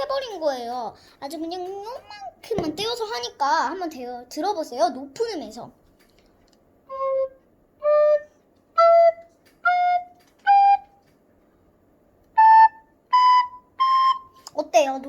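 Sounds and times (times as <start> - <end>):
recorder playing short notes: 6.9 - 11.0.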